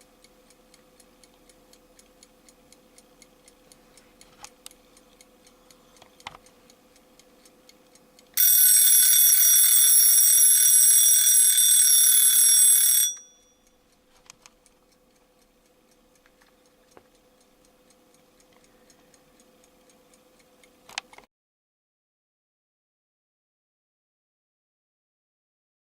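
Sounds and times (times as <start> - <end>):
alarm clock ticking: 0.0 - 14.0, 14.9 - 20.8
alarm clock ringing: 8.4 - 13.6.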